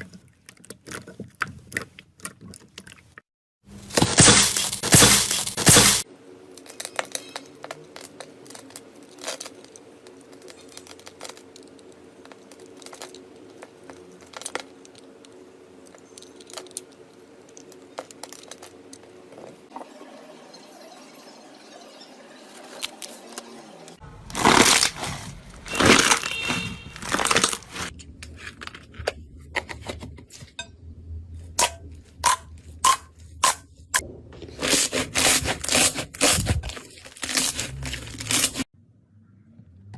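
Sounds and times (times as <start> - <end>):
slime crackling and crinkling: 3.8 - 19.7, 24.1 - 28.0, 34.6 - 38.7
slime squishing: 24.3 - 27.9, 34.5 - 38.7.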